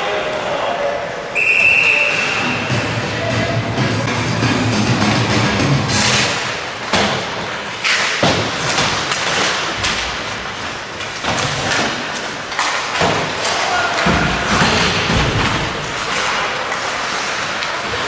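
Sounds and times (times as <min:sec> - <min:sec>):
hockey pucks and sticks thudding: 0:04.0 - 0:18.0.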